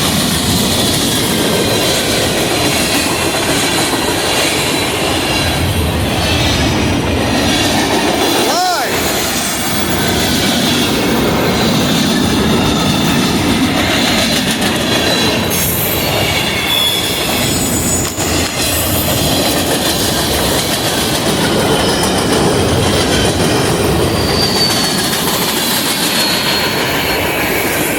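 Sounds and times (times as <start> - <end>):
freight train wheels rumbling: 0.0 - 27.9
high wheel squeals: 15.0 - 18.6, 21.5 - 27.9.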